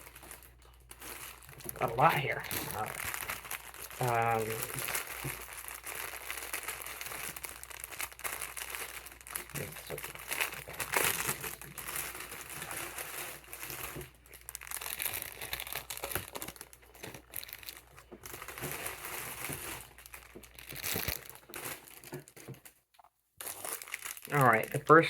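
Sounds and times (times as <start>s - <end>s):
plastic packaging crinkling: 0.0s - 25.0s.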